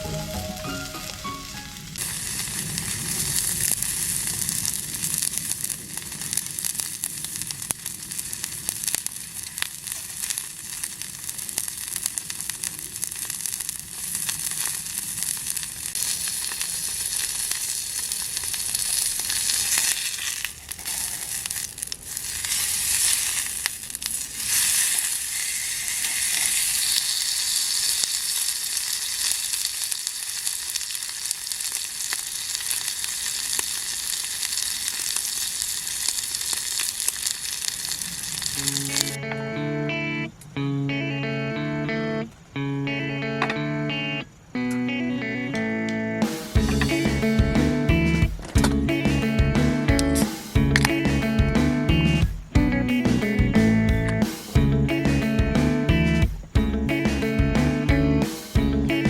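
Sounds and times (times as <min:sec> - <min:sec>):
food frying with sizzle and crackle: 0:00.0 - 0:39.3, 0:45.8 - 0:59.0.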